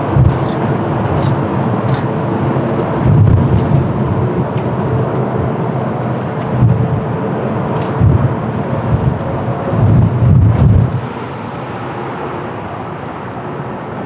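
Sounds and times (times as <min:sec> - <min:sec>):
wind buffeting microphone: 0:00.0 - 0:11.0
jet engines rushing: 0:00.0 - 0:14.0.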